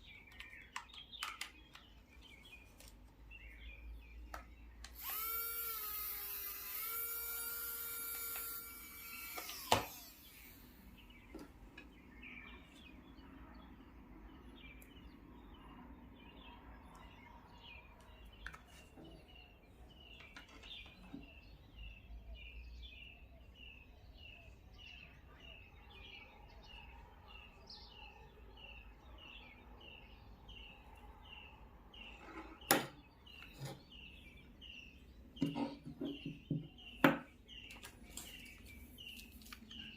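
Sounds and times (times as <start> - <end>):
bird chirping: 0.0 - 39.9
electric motor whining: 4.9 - 10.8
motor stopping click: 8.1 - 10.5.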